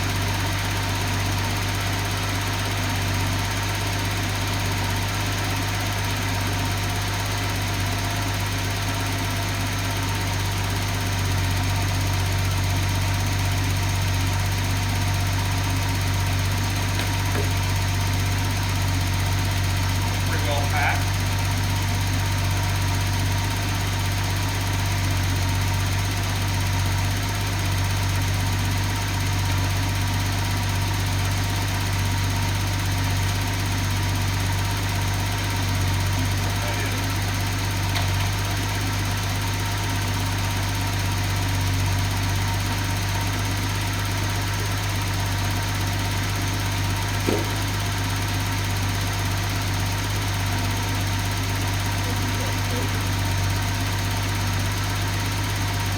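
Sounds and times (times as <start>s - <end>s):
car engine idling: 0.0s - 55.9s
short tap: 47.2s - 47.7s.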